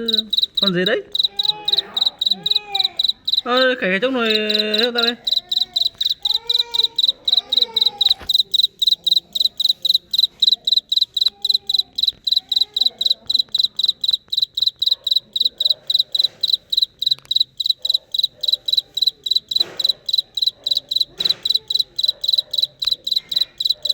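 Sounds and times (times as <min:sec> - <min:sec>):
cricket chirping: 0:00.0 - 0:23.9.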